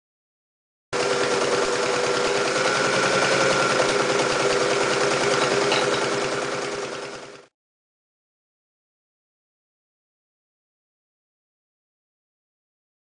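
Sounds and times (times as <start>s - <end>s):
sewing machine running: 1.0s - 7.5s.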